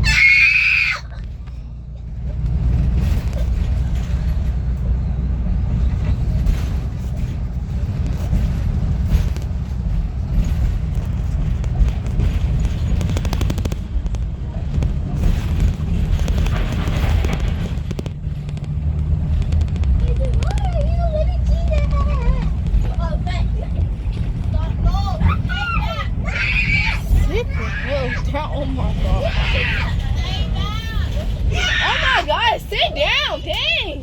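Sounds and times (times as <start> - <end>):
bus engine and road rumble: 0.0 - 34.0
faint knocks and rattles: 2.0 - 25.7.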